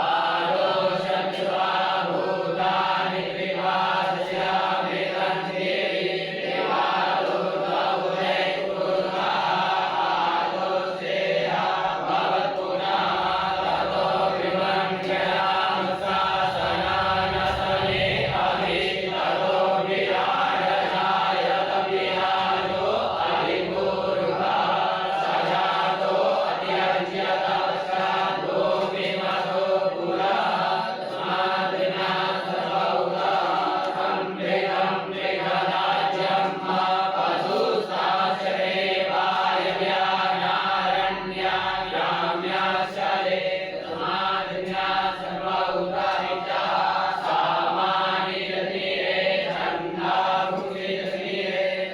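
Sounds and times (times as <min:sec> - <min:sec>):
group of voices chanting: 0:00.0 - 0:51.9.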